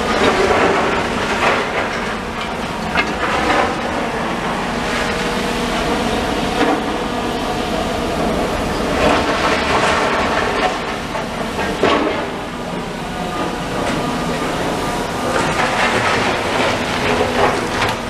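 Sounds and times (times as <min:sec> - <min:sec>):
metal and rubble clanking: 0:00.0 - 0:05.1, 0:08.2 - 0:18.0
diesel engine running: 0:00.0 - 0:18.0.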